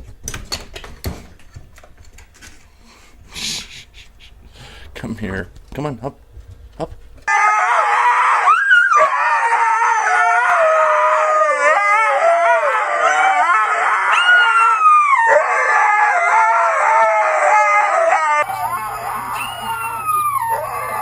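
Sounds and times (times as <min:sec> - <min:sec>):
dog howling: 0:07.3 - 0:21.0.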